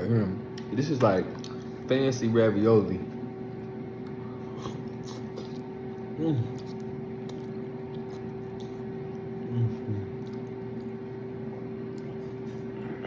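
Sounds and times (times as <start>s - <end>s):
electrical appliance hum: 0.0s - 13.0s
person humming mm: 6.2s - 6.7s, 9.4s - 10.2s
faint eating clicks: 10.1s - 11.0s.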